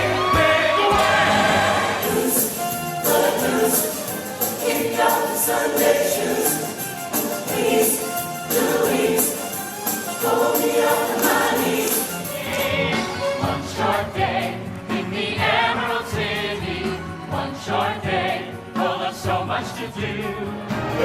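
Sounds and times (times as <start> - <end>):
instrumental accompaniment: 0.0 - 19.0
chorus singing with vibrato: 0.0 - 21.0
sharp percussion strikes: 2.0 - 13.2.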